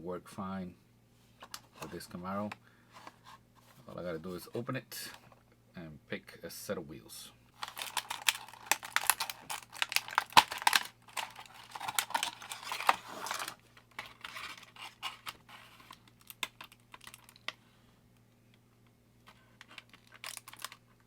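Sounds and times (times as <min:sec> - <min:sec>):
plastic crinkling: 0:07.6 - 0:17.6, 0:19.3 - 0:21.0.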